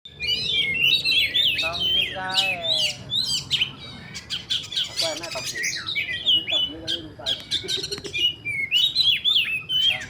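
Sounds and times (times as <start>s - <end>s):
bird singing whistled song: 0.1s - 10.0s.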